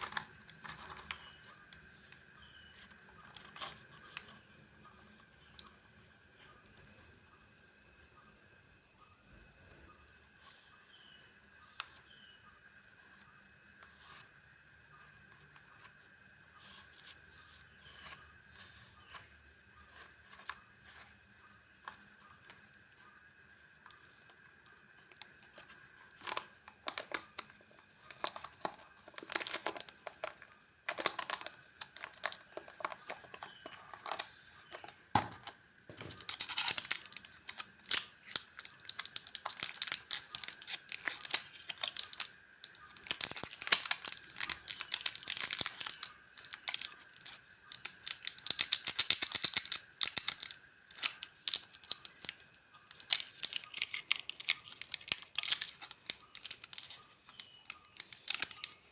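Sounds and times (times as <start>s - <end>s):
plastic wrappers crinkling: 0.0s - 1.5s, 25.0s - 58.9s.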